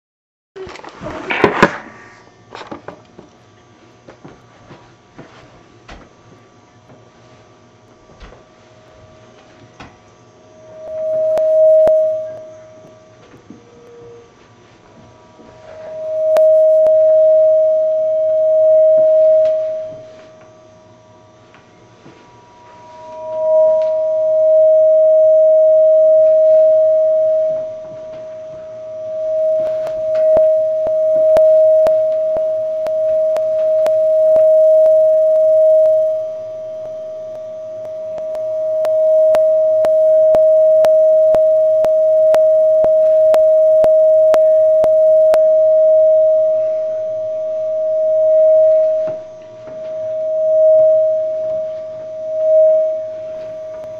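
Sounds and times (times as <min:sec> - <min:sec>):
audio feedback howl: 0:00.6 - 0:53.9
faint high tone: 0:10.5 - 0:14.5, 0:15.4 - 0:20.8, 0:22.0 - 0:53.9
sharp clicks: 0:36.8 - 0:45.4.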